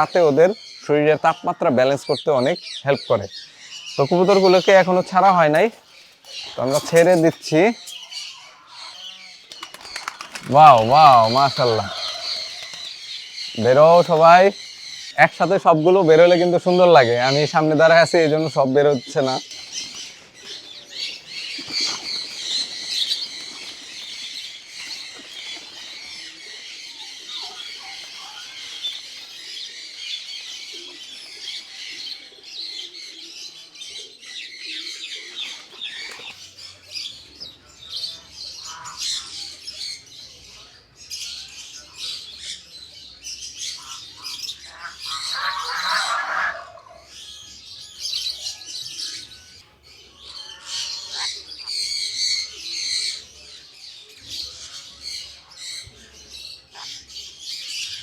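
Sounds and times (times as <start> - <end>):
many birds chirping: 0.0 - 58.0
wings flapping: 9.5 - 14.4, 21.2 - 26.2
bird squawking call: 43.7 - 47.1.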